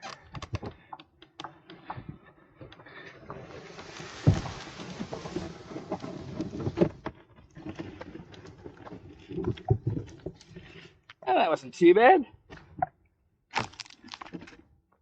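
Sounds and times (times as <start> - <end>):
kayak knocking and scraping: 0.0 - 11.5
heavy thump: 4.2 - 5.1.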